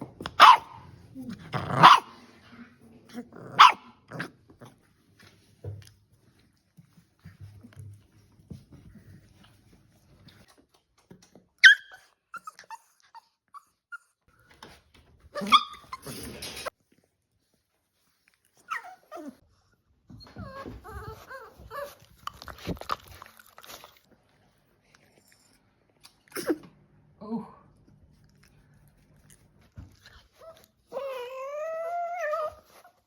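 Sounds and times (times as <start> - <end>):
puppy whining: 11.6 - 14.3, 15.3 - 16.4, 18.6 - 19.4, 20.1 - 23.9, 30.0 - 33.0.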